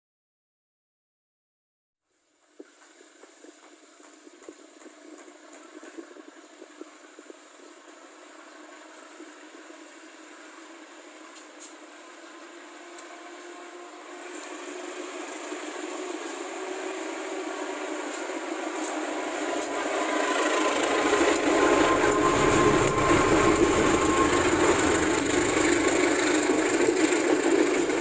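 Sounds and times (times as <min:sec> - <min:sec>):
rail clatter and wheel noise: 0:11.3 - 0:28.0
train passing rumble: 0:12.5 - 0:28.0.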